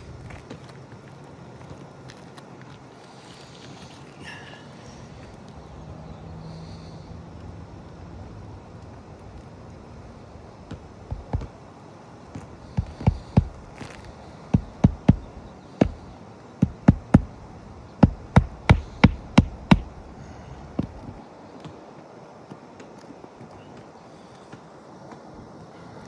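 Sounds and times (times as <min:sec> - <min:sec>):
hammer striking nails: 0:11.1 - 0:11.5, 0:12.4 - 0:21.2.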